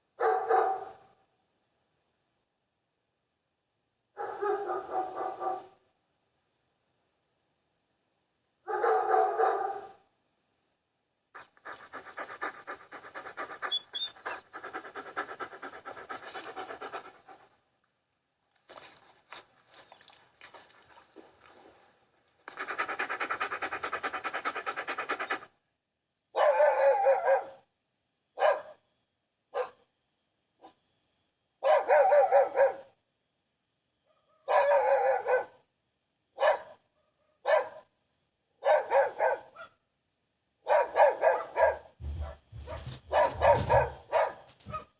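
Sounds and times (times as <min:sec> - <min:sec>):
dog barking: 0:00.2 - 0:01.1, 0:04.2 - 0:05.8, 0:08.7 - 0:10.0, 0:26.4 - 0:27.6, 0:28.4 - 0:28.8, 0:29.6 - 0:29.8, 0:31.6 - 0:33.0, 0:34.1 - 0:35.6, 0:36.4 - 0:37.9, 0:38.6 - 0:39.8, 0:40.6 - 0:44.9
dog whining: 0:11.4 - 0:17.2, 0:42.0 - 0:44.9
dog panting: 0:11.4 - 0:17.6, 0:22.5 - 0:25.5, 0:41.6 - 0:44.8.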